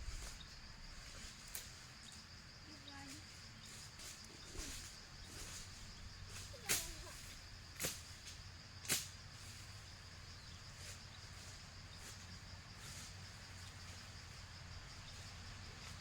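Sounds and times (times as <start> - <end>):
high insect trill: 0.0 - 16.0.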